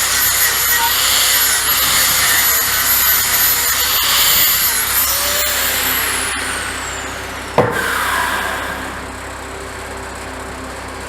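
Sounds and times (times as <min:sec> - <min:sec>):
welding arc crackling and hissing: 0:00.0 - 0:09.2
short sharp knock: 0:07.6 - 0:07.9.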